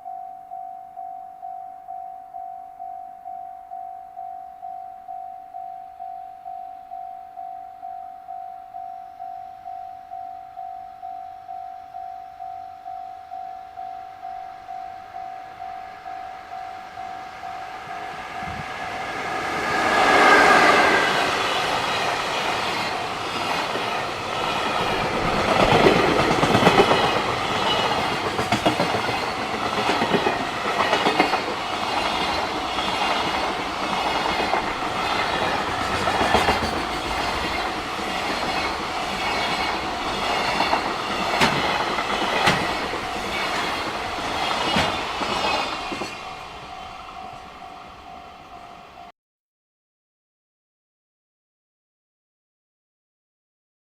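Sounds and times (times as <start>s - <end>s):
level crossing alarm ringing: 0.0s - 49.1s
train wheels clattering: 17.7s - 46.8s.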